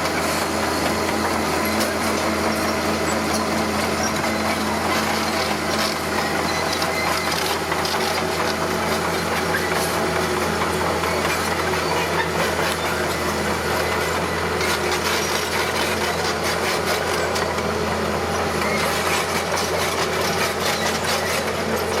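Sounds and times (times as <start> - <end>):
bulldozer engine running: 0.0 - 22.0
clattering and crunching soil: 0.0 - 22.0.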